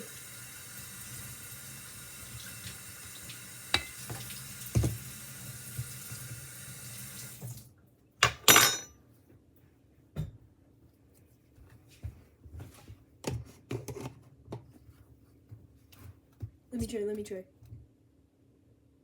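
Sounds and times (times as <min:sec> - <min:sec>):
water running from a tap: 0:00.0 - 0:07.7.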